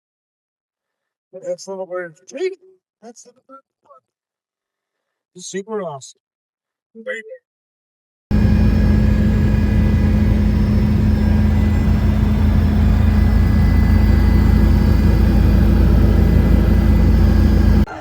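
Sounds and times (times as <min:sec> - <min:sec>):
vehicle engine rumble with whine: 0:08.3 - 0:17.9.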